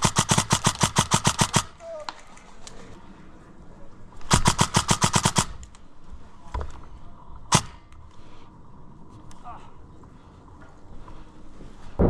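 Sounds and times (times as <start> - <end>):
airsoft gun firing: 0.0 - 1.8, 4.3 - 5.7, 7.5 - 7.8.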